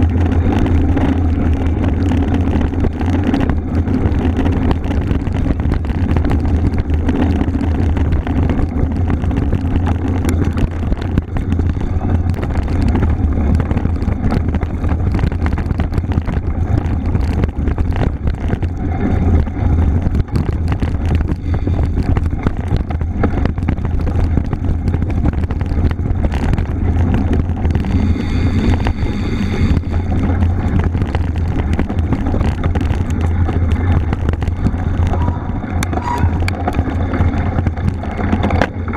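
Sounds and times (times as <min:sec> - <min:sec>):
wind buffeting microphone: 0:00.0 - 0:38.9
bicycle tyres hissing on trail: 0:21.1 - 0:22.4, 0:26.8 - 0:32.4.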